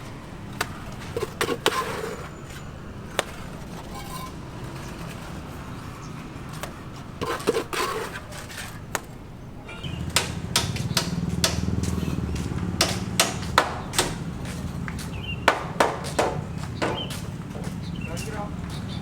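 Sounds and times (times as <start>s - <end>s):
sharp knocks and clacks: 10.0s - 18.3s.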